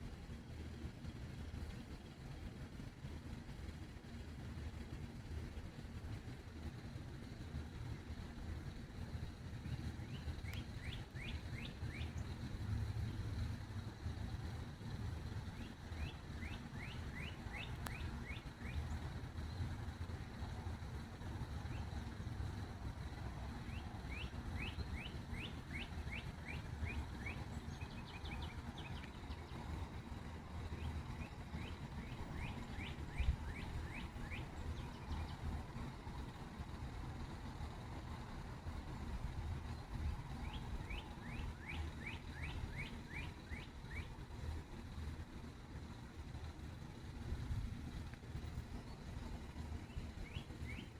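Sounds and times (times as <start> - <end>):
bird singing: 10.0 - 12.5, 15.5 - 19.7, 23.5 - 35.9, 39.7 - 44.2, 48.8 - 50.9.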